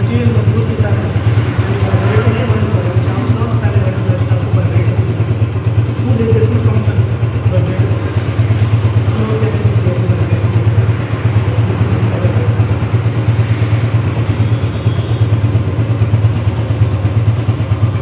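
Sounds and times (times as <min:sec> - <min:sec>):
motorcycle engine running: 0:00.0 - 0:18.0.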